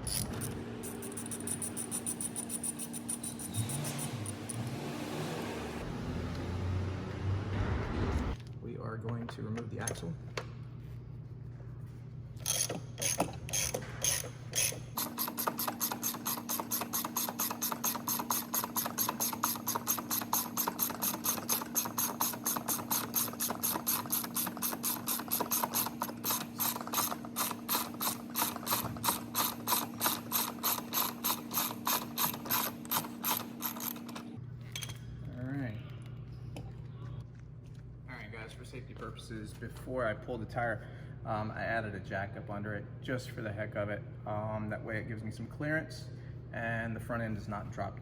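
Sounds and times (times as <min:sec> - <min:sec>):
ratchet clicking: 0:00.0 - 0:04.8, 0:12.4 - 0:34.3
steady hum: 0:00.0 - 0:04.8.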